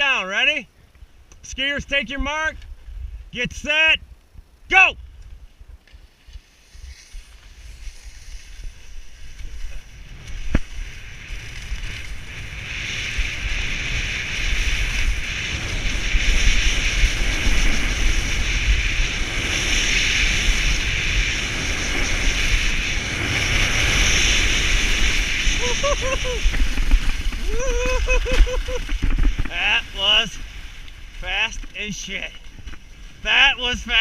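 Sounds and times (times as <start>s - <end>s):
skis hissing on snow: 6.0s - 34.0s
wind rushing over microphone: 6.4s - 34.0s.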